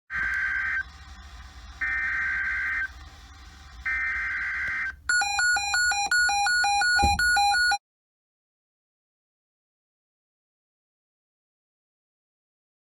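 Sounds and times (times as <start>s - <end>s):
digital data screech: 0.1s - 5.0s
two-pitch electronic beeping: 3.8s - 7.8s.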